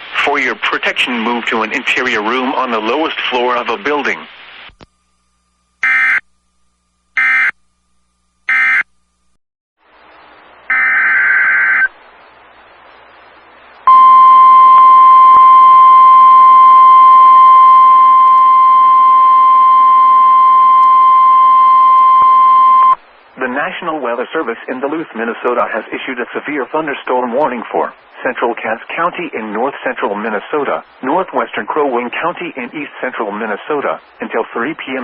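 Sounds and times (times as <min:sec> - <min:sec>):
loud steady alarm tone: 0:05.8 - 0:06.2, 0:07.2 - 0:07.6, 0:08.5 - 0:08.9, 0:10.7 - 0:11.9
screeching digital data tones: 0:10.7 - 0:12.0.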